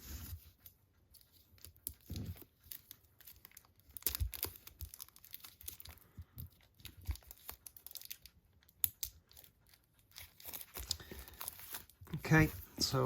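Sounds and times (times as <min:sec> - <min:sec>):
plastic wrapping torn and crinkled: 0:01.6 - 0:13.0.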